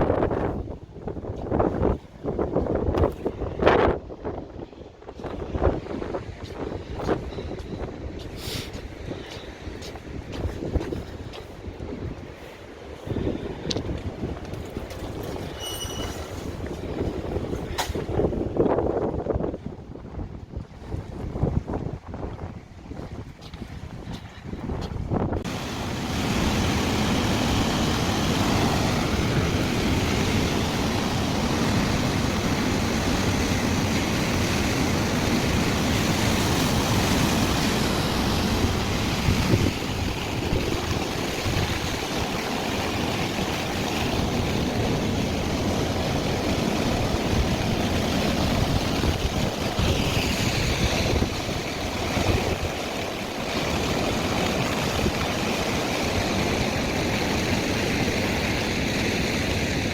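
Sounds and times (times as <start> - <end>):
wind buffeting microphone: 0.0 - 59.9
surf breaking on beach: 25.4 - 59.9.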